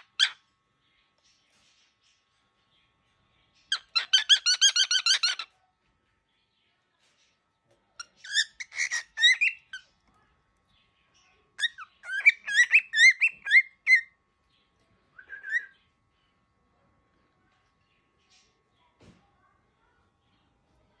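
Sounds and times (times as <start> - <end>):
cockatiel shrill chirps: 3.7 - 5.5, 8.2 - 9.8, 11.6 - 14.1.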